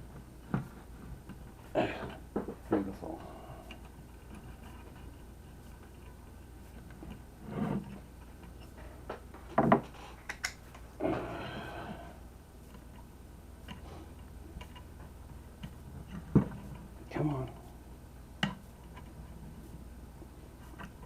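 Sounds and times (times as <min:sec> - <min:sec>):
scraping rub: 0:07.4 - 0:08.0.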